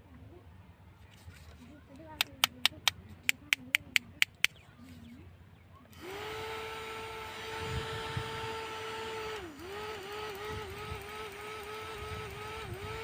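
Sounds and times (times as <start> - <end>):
sharp clicks: 2.2 - 4.6
small motor whirring: 5.9 - 13.0.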